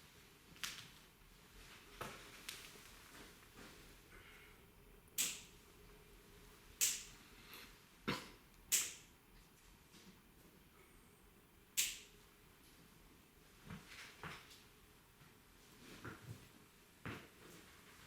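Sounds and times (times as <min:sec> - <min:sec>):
sharp short clicks: 0:05.2 - 0:05.5, 0:06.8 - 0:07.1, 0:08.7 - 0:09.1, 0:11.8 - 0:12.1.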